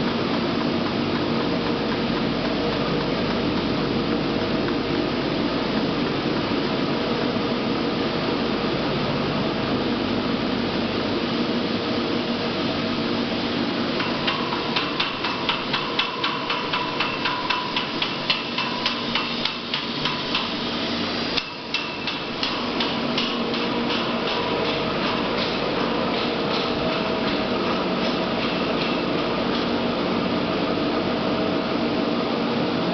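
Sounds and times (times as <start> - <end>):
rapid sharp metallic knocks: 0.0 - 4.9, 14.0 - 20.6, 21.4 - 29.7
industrial machine noise: 0.0 - 32.9.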